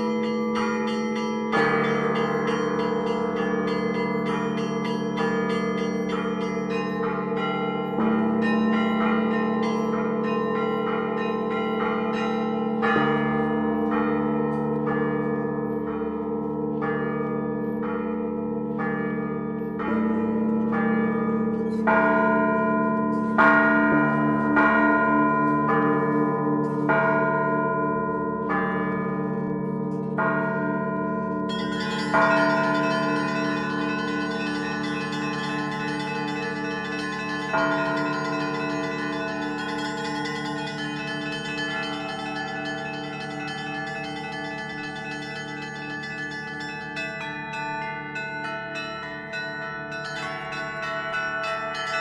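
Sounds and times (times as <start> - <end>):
small bells struck rhythmically: 0.0 - 52.0
low bells humming: 31.5 - 52.0.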